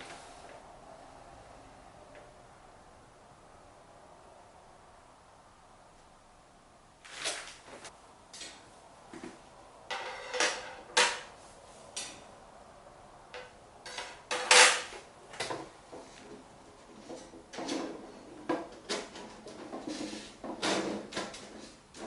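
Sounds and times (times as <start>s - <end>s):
metal plates clanking: 9.9s - 11.3s.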